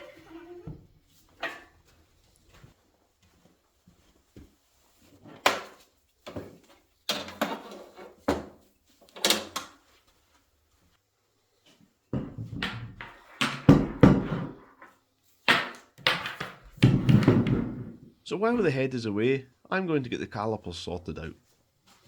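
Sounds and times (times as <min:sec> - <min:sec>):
objects knocking and clunking: 0:12.1 - 0:18.2.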